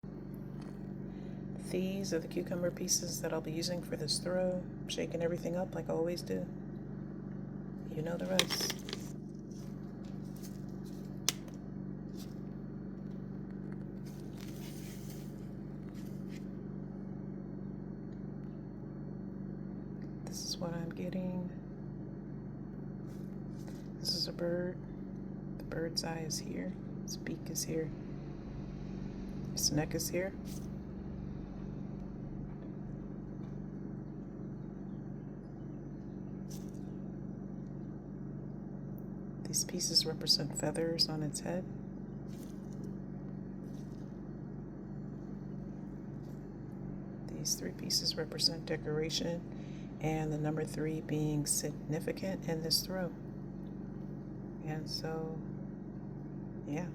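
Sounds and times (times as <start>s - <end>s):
low hum: 0.0s - 56.9s
cucumber pieces rustling: 8.3s - 12.5s, 13.9s - 16.5s, 42.3s - 43.0s, 43.6s - 44.2s.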